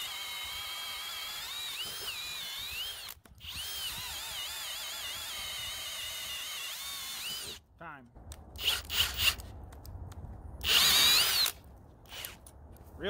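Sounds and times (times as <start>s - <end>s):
drill motor whining into wood: 0.0s - 7.6s, 8.6s - 9.4s, 10.6s - 12.4s.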